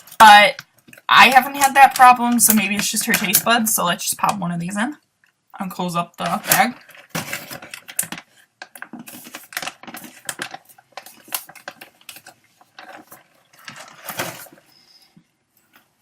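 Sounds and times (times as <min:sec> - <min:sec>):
snack bag crinkling: 0:06.2 - 0:14.6.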